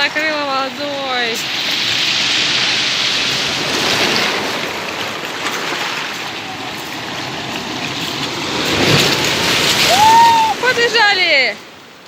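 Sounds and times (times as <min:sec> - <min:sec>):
waves breaking on shore: 0:00.0 - 0:12.0.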